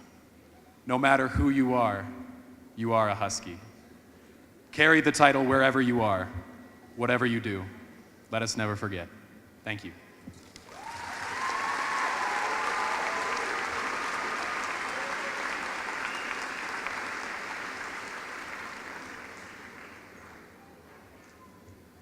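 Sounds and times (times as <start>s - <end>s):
large audience applauding: 10.5s - 20.6s
crowd cheering: 10.6s - 20.5s.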